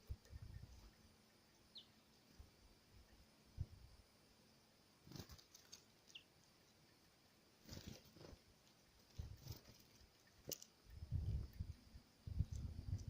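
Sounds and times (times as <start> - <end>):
high falling bird chirp: 0.0 - 3.3, 5.1 - 12.4
birds tapping and rustling: 5.0 - 6.6, 7.6 - 11.8.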